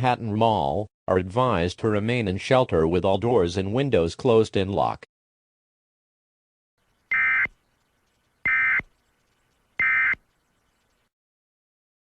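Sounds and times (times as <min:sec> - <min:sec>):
digital data bursts warbling: 0:07.1 - 0:07.6, 0:08.4 - 0:10.6.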